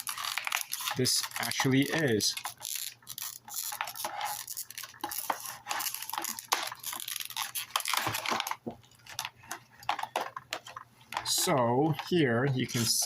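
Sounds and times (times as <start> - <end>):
packaging rustling: 0.0 - 13.0.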